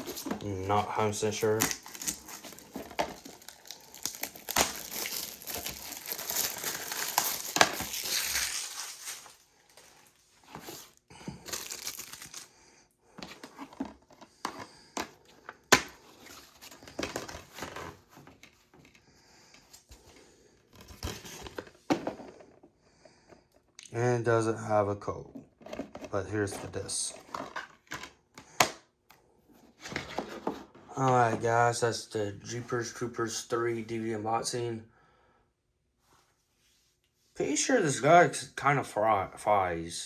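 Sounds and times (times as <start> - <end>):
plastic wrap crackling: 0.0 - 9.9, 11.3 - 12.5
case clicks and rustles: 0.0 - 12.5, 13.2 - 19.0.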